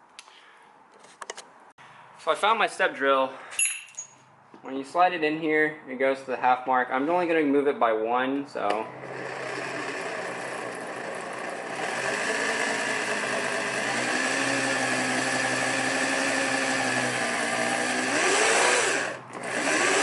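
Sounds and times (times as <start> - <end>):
power drill drilling plastic: 8.8 - 20.0.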